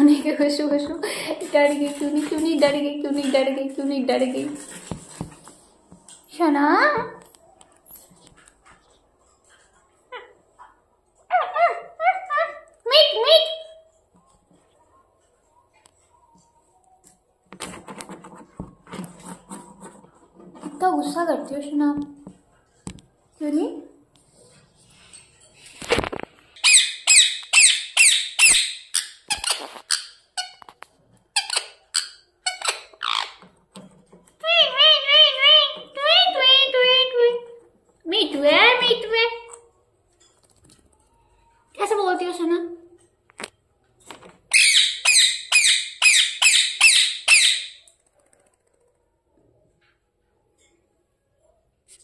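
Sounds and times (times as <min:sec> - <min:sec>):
parrot squawking: 0:26.6 - 0:30.6, 0:31.4 - 0:33.4, 0:34.4 - 0:37.2, 0:44.5 - 0:47.8.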